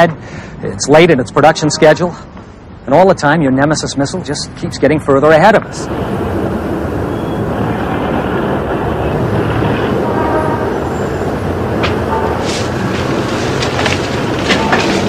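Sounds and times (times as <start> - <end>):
street traffic: 0.0 - 15.0
car horn: 1.6 - 2.1, 9.9 - 11.2, 11.9 - 12.7.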